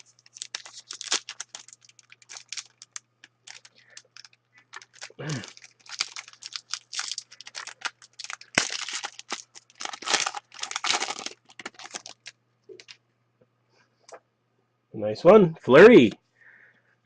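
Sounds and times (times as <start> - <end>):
card pack wrapper crinkling: 0.0 - 13.0
faint low hum: 0.0 - 17.0.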